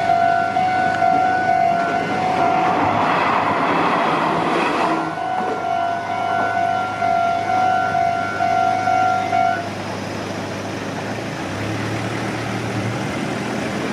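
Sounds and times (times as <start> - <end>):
level crossing warning bell: 0.0 - 3.1, 4.5 - 9.9.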